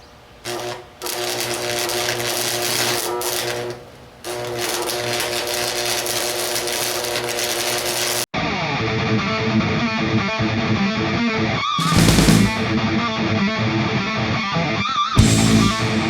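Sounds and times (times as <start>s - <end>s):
arc welding crackle: 0.4s - 8.3s, 11.8s - 12.8s.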